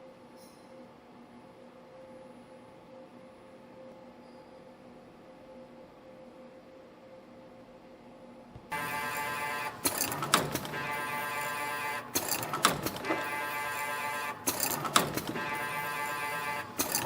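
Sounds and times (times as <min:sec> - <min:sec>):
sharp machine clacks: 0:08.7 - 0:17.0
spring machine motor whine: 0:08.7 - 0:17.0.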